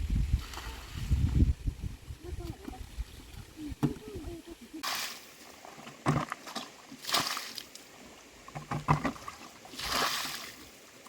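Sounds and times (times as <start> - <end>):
water splashing and sloshing: 2.3 - 11.0.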